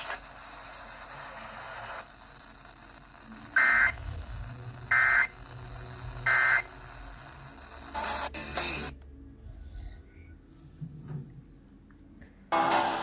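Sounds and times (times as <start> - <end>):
screechy digital data bursts: 2.4 - 4.0, 4.8 - 8.4.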